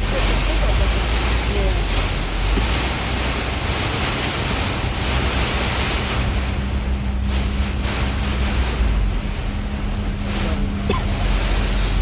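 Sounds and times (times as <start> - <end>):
heavy rain: 0.0 - 12.0
wind buffeting microphone: 0.0 - 12.0.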